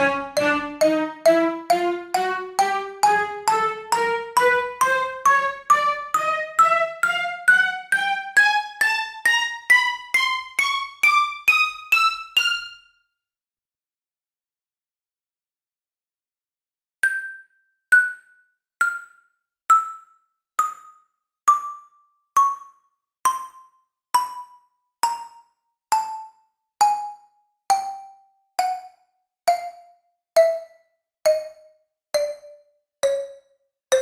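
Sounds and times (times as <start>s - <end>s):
descending cartoon footstep notes: 0.0s - 12.7s.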